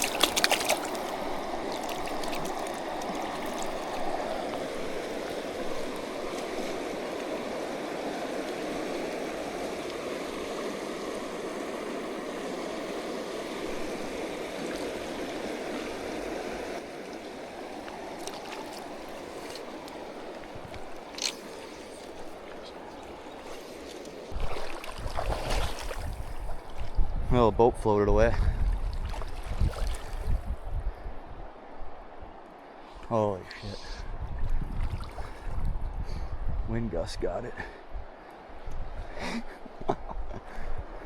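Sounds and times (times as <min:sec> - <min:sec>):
river water rushing: 0:00.0 - 0:26.9.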